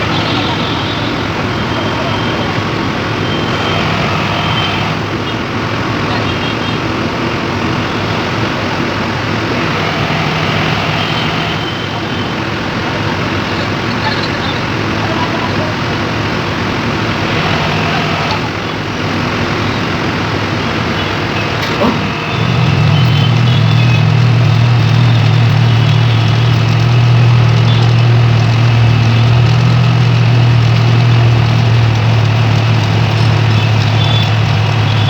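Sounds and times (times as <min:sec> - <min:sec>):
machine noise: 0:00.0 - 0:05.3, 0:07.7 - 0:35.0
vibratory pile hammer humming: 0:21.1 - 0:35.0.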